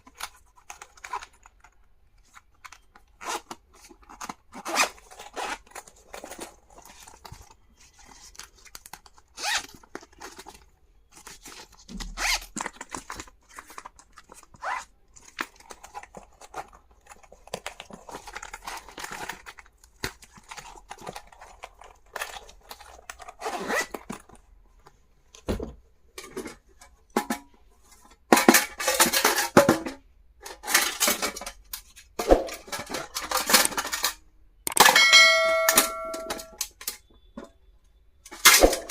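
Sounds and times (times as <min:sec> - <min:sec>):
packaging torn and crinkled: 0:00.0 - 0:24.4.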